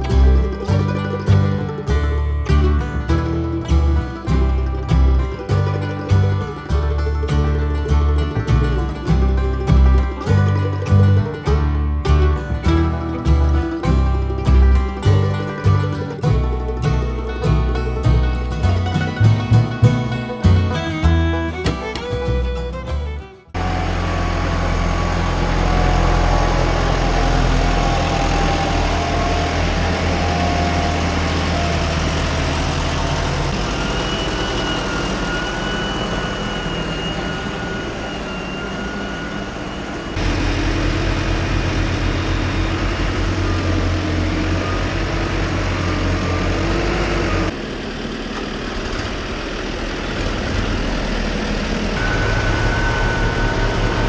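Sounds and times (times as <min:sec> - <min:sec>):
background music: 0:00.0 - 0:23.5
diesel tractor engine running: 0:00.0 - 0:54.0.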